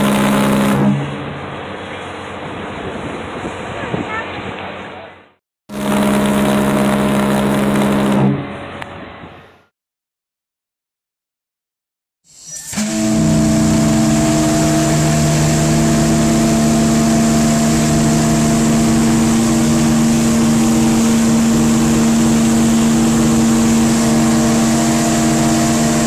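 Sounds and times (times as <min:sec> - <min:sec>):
ship's whistle blast: 0:12.3 - 0:26.0.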